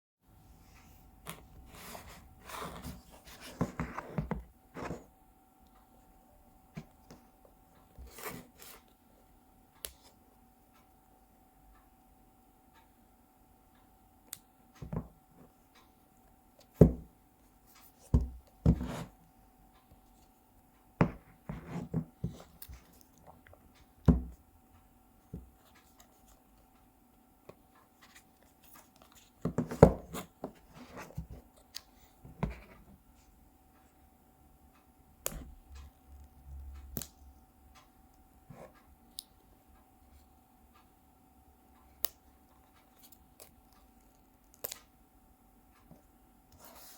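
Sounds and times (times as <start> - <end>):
hands handling cardboard box: 1.3 - 5.1.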